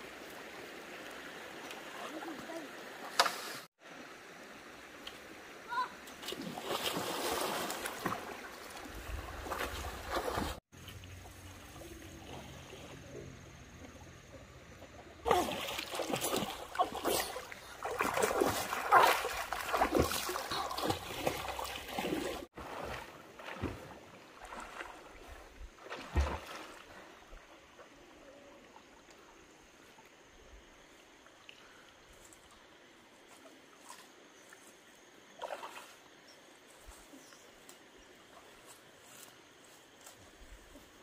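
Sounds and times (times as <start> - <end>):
water splashing and sloshing: 0.0 - 41.0
heavy splash: 6.2 - 10.6, 15.3 - 25.0, 25.8 - 27.0.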